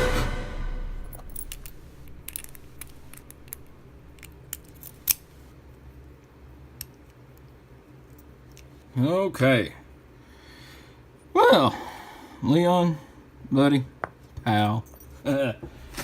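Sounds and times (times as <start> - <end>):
music track: 0.0 - 1.4.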